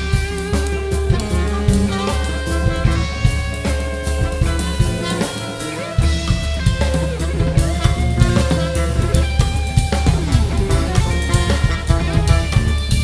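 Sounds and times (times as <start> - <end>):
instrumental band music: 0.0 - 13.0.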